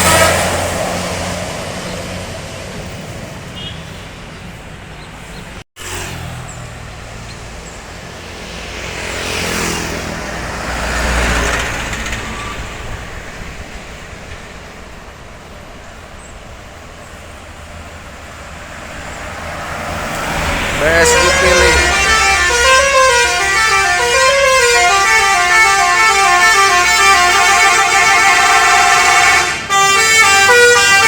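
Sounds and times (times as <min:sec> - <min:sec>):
vehicle passing close by: 0:00.0 - 0:04.6, 0:05.2 - 0:15.8, 0:16.4 - 0:25.8
road traffic noise: 0:00.0 - 0:31.0.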